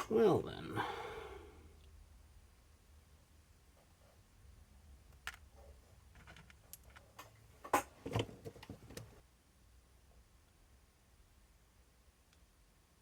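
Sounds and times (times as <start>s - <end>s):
small parts clicking and tapping: 5.1s - 9.2s.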